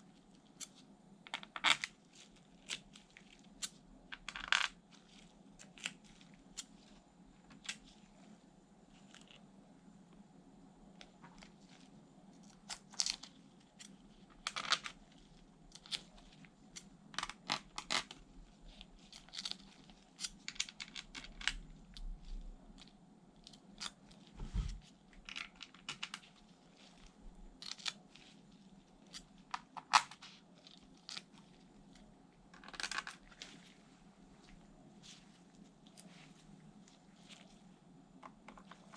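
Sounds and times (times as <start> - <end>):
low thud: 24.4 - 24.8.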